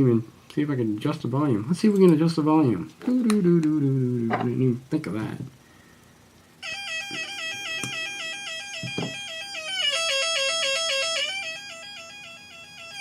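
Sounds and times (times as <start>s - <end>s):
warbling electronic siren: 6.6s - 13.0s.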